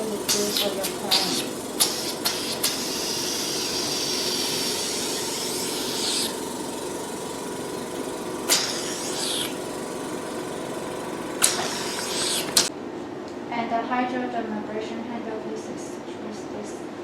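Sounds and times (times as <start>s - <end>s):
suction hissing: 0.0s - 12.7s
vacuum pump humming: 0.0s - 12.8s.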